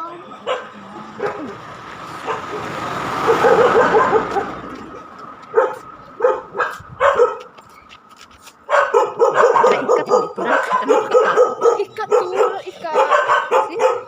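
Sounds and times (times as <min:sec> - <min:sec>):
dog barking: 0:00.4 - 0:01.6, 0:02.2 - 0:04.8, 0:05.5 - 0:07.6, 0:08.6 - 0:14.0.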